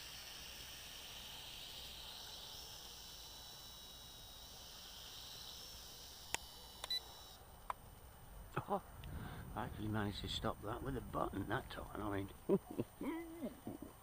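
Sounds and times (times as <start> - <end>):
quadcopter motors whining: 0.0 - 8.1
sharp clicks: 6.2 - 7.0.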